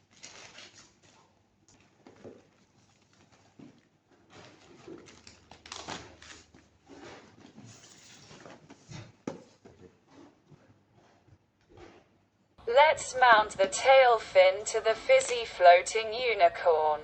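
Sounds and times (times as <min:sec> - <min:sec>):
packaging rustling: 0:00.0 - 0:08.8.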